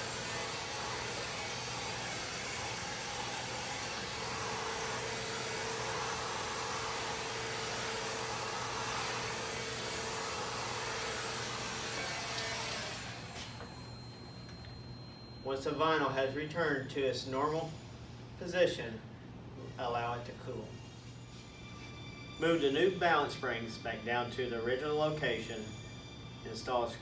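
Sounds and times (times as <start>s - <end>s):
heat gun blowing: 0.0s - 13.7s
faint steady whine: 0.0s - 27.0s.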